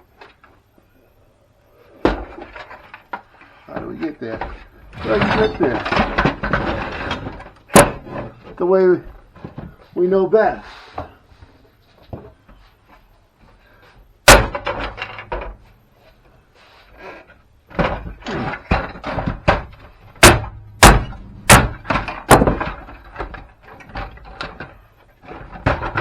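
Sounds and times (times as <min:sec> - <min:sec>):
hammer breaking plastic housing: 0:14.2 - 0:15.5, 0:17.7 - 0:24.7.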